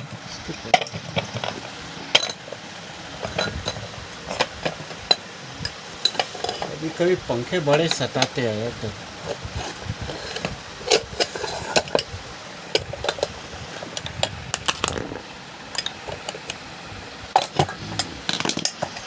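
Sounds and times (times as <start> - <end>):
metal clicks and scrapes: 3.2 - 6.8, 9.2 - 12.1, 12.7 - 16.6.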